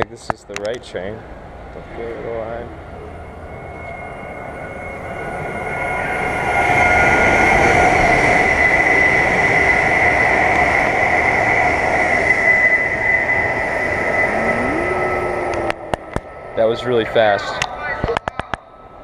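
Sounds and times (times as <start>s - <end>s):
steady high whine: 1.0s - 17.4s
train rushing past: 3.1s - 17.4s.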